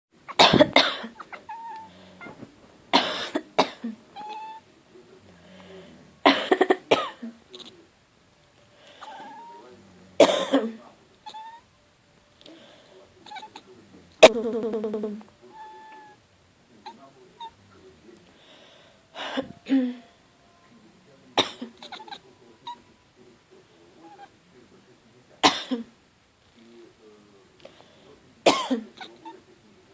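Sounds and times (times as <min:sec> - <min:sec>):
person coughing: 0:00.4 - 0:01.2, 0:03.0 - 0:04.0, 0:06.3 - 0:07.3, 0:10.2 - 0:10.8, 0:19.2 - 0:20.0, 0:28.5 - 0:28.8
cat meowing: 0:01.1 - 0:02.5, 0:04.2 - 0:04.7, 0:08.9 - 0:09.8, 0:11.2 - 0:11.7, 0:13.2 - 0:13.7, 0:15.5 - 0:16.2, 0:21.8 - 0:22.9, 0:24.0 - 0:24.3.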